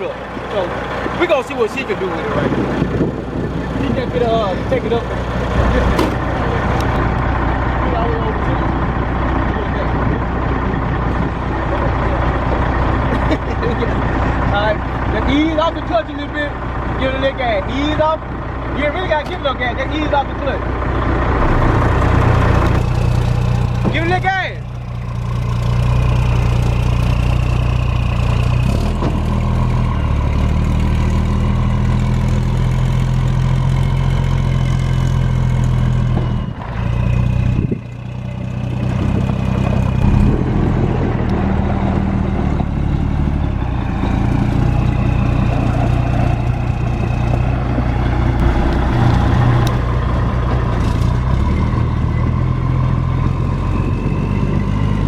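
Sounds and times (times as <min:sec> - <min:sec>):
pickup truck engine: 0:00.0 - 0:55.0.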